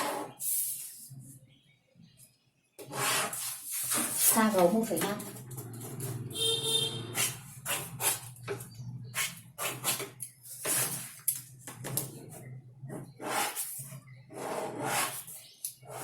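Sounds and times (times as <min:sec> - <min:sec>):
marking tool scratching fabric: 0:02.8 - 0:04.6, 0:07.1 - 0:11.2, 0:12.4 - 0:16.0.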